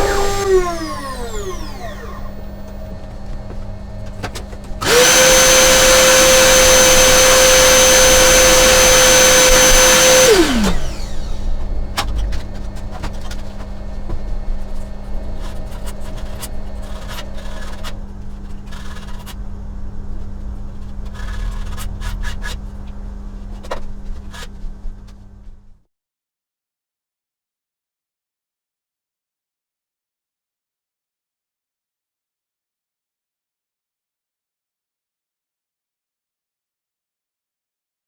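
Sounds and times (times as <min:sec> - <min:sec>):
router spindle high whine: 0:00.0 - 0:19.2
steady low hum: 0:00.3 - 0:04.9, 0:10.4 - 0:25.8.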